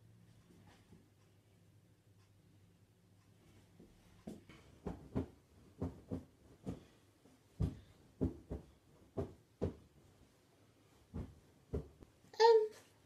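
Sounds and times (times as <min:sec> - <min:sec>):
dull thumps: 0:04.3 - 0:10.1, 0:11.1 - 0:12.0.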